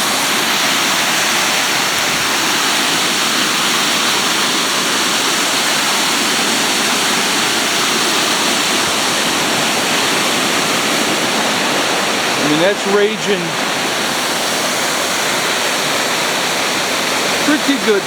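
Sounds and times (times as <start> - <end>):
waterfall roaring: 0.0 - 18.0.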